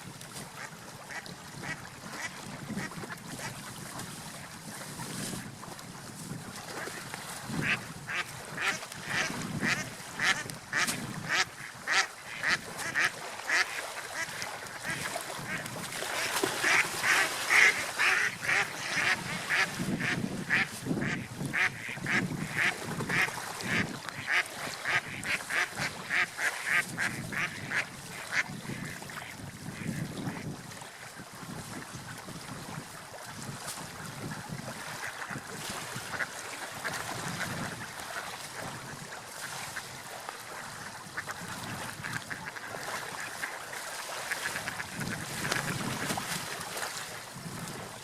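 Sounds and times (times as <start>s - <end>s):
water and wind wash: 0.0s - 48.0s
ducks quacking: 0.6s - 3.5s, 7.6s - 30.1s.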